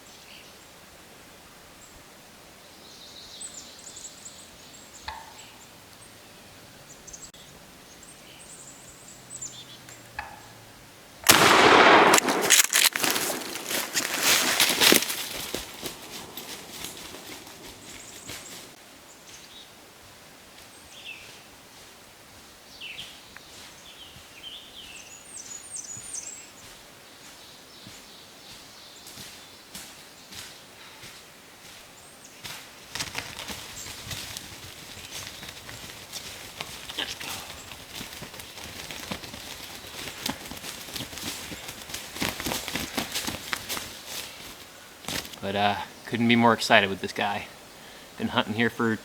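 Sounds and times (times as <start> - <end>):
small birds chirping: 2.6 - 19.7, 20.7 - 21.5, 22.7 - 31.0, 33.1 - 49.0
shotgun blast: 11.3 - 13.8
rustling and thumps: 11.3 - 18.8, 32.5 - 45.4.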